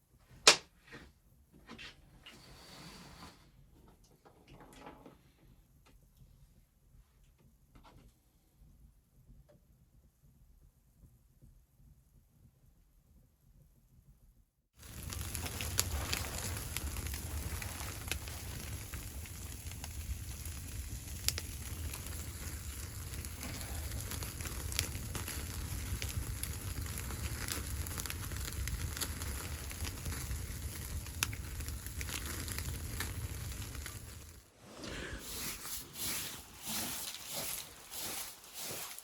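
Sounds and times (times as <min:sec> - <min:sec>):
fire crackling pops: 0:14.8 - 0:39.0
wood fire hissing: 0:14.8 - 0:39.0.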